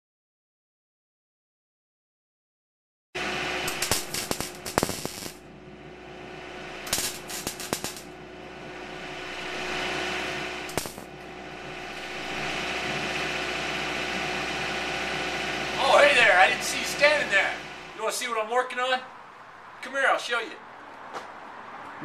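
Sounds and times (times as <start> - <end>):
welder crackling: 3.2 - 18.4
steady machine hum: 3.2 - 19.8.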